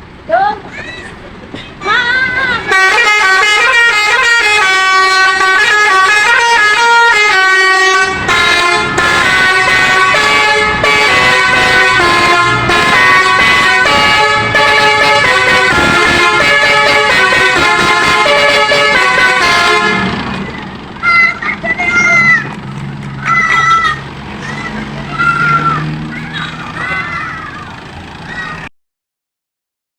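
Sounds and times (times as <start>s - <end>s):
bus air horn playing melody: 2.4s - 20.5s.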